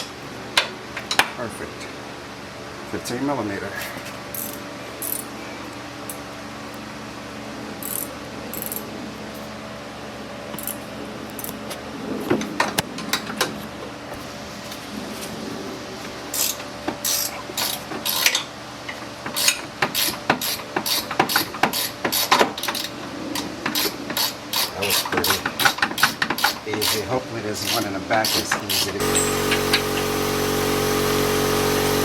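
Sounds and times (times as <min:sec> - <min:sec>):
ratchet wrench clicking: 0:04.3 - 0:05.3, 0:07.8 - 0:08.8, 0:19.4 - 0:22.9, 0:23.8 - 0:29.8.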